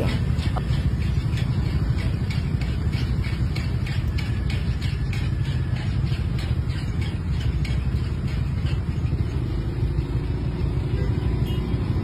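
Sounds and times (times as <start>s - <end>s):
rapid clicking rattle: 0.0s - 12.0s
steady low rumble: 0.0s - 12.0s.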